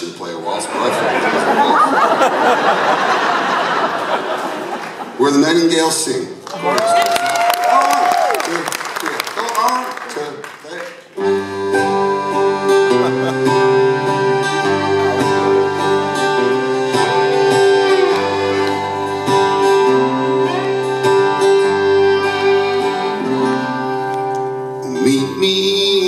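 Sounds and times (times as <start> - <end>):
guitar: 11.0 - 26.0
live band playing a waltz: 11.0 - 26.0.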